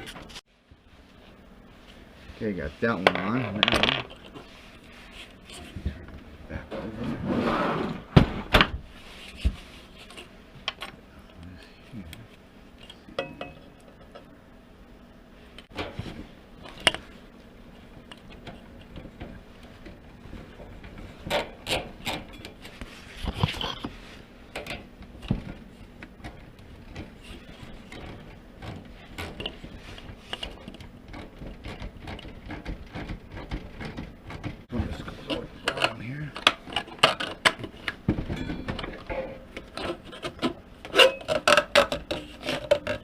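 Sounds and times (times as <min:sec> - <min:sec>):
clicks and rattles of hand work: 0:18.0 - 0:43.0.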